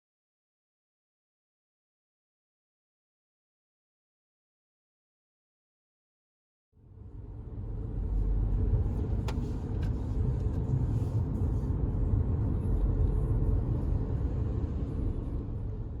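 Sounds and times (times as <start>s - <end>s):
car road rumble from inside: 6.8s - 16.0s.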